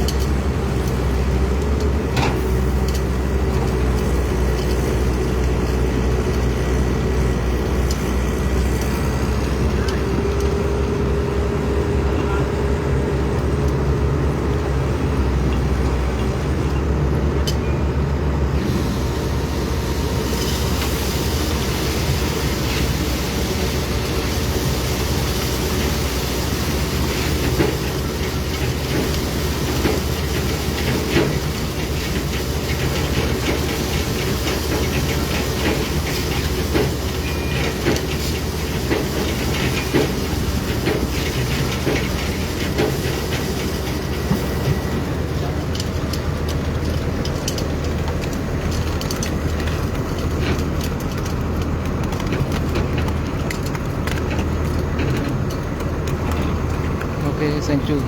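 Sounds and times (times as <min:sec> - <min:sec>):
diesel machinery rumbling: 0:00.0 - 0:58.0
hiss: 0:18.6 - 0:44.6.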